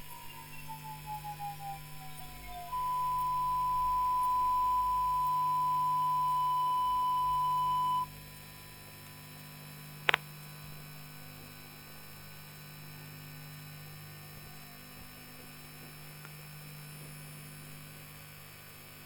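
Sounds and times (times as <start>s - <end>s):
electronic whine: 0.0s - 8.4s
low electrical hum: 0.0s - 19.0s.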